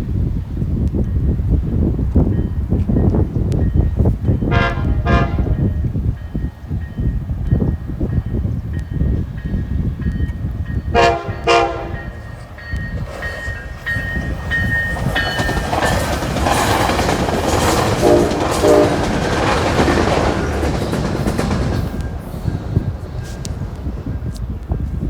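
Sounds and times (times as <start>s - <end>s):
train rumbling past: 0.0s - 25.0s
train horn blasts: 4.4s - 5.9s, 10.9s - 12.5s, 17.4s - 20.4s
train wheel clatter: 6.2s - 25.0s.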